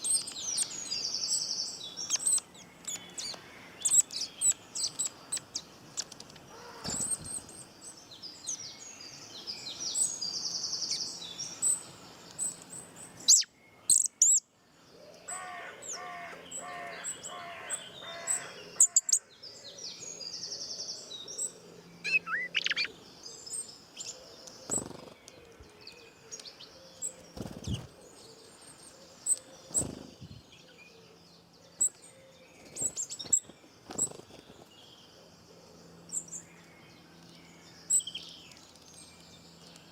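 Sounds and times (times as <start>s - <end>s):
songbirds chirping and singing: 0.0s - 39.9s
lower pulsed bird call: 20.0s - 24.3s.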